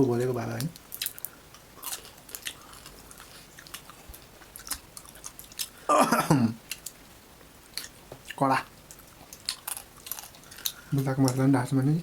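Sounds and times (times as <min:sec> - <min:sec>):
crunching and chewing: 0:00.6 - 0:05.9, 0:06.6 - 0:07.0, 0:07.6 - 0:11.5.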